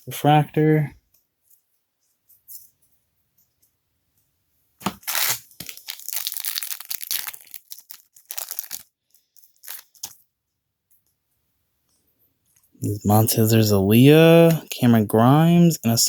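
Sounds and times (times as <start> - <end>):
foil wrapper tearing: 4.8 - 10.2
foil wrapper crinkling: 4.8 - 10.3.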